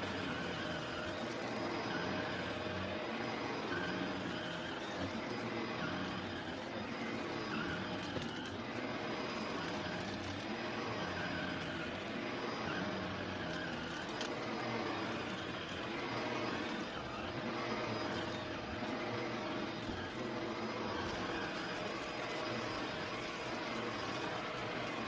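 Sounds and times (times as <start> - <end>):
vacuum cleaner running: 0.0 - 25.0
small clicks: 3.2 - 10.6, 13.4 - 25.0.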